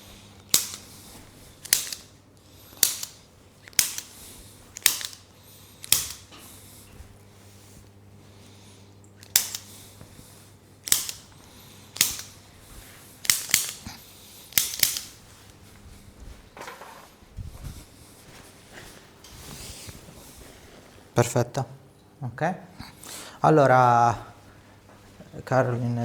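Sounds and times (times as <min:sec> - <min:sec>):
sharp cracks of joints: 0:00.5 - 0:06.4, 0:09.2 - 0:09.8, 0:10.8 - 0:12.4, 0:13.2 - 0:15.2
soft rustling: 0:15.1 - 0:21.2.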